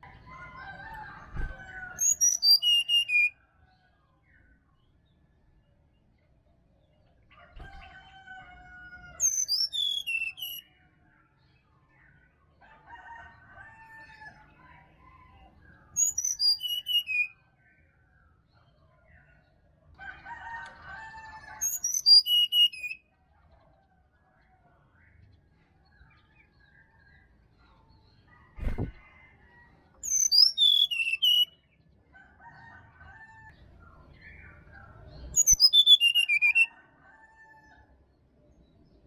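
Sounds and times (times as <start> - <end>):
bird singing whistled notes: 2.0 - 3.4, 9.2 - 10.7, 16.0 - 17.4, 21.6 - 23.0, 30.0 - 31.6, 35.4 - 36.7
lower bird call: 30.1 - 31.5.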